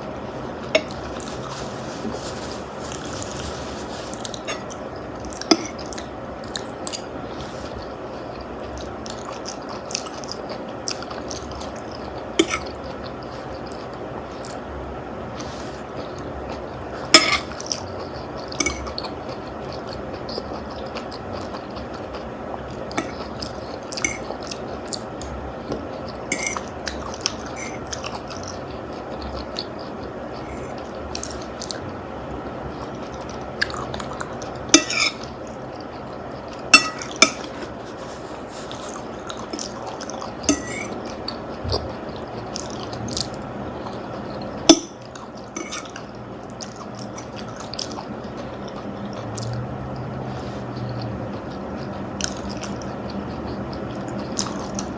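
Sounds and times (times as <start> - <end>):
cutlery clinking on a plate: 17.2 - 17.5, 26.3 - 26.7, 34.8 - 35.2, 36.8 - 37.6, 40.5 - 41.0, 45.6 - 45.9.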